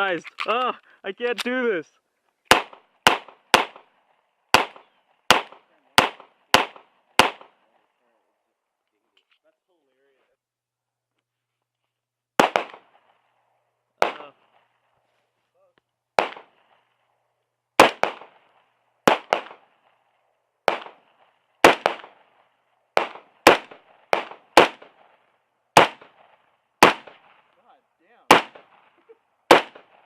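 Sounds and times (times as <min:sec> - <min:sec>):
gunshots: 0:02.5 - 0:07.7, 0:12.4 - 0:13.2, 0:14.0 - 0:14.7, 0:16.2 - 0:16.8, 0:17.8 - 0:19.9, 0:20.6 - 0:27.5, 0:28.2 - 0:30.0.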